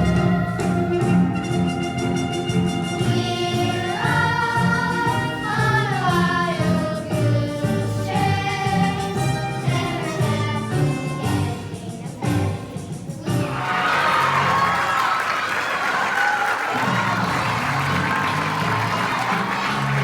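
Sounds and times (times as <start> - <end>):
group singing in chorus: 0.0 - 1.3, 3.0 - 15.6
instrumental accompaniment: 0.0 - 20.0.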